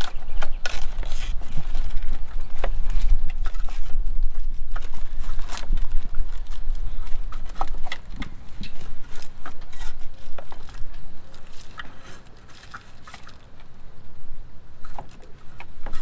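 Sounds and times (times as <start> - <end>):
plastic and metal parts clicking: 0.0 - 3.9.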